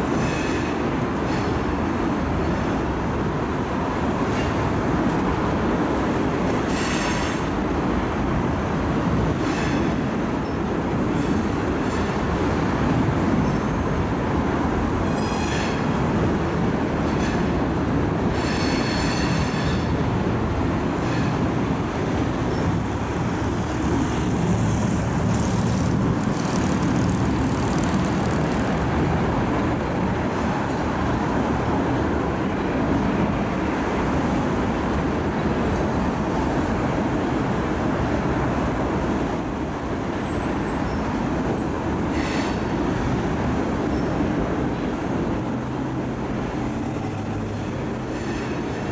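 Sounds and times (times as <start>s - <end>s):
train cars rolling on rails: 0.0s - 48.9s
high-pitched wheel squeals: 39.4s - 42.7s.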